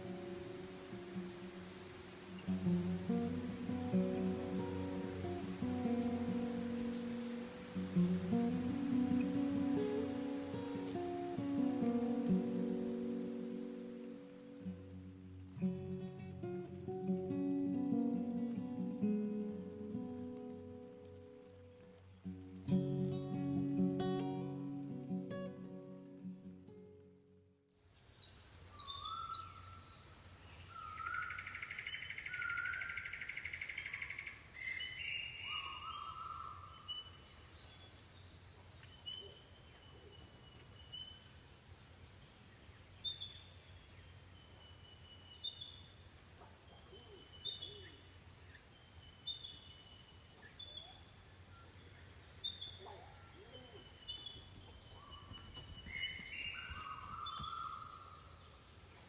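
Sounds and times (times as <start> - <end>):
birds whistling calls: 30.8 - 37.1, 52.5 - 58.4.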